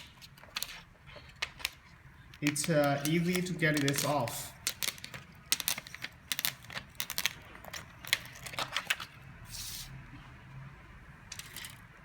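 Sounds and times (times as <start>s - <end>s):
adhesive film peeling: 0.0s - 9.0s.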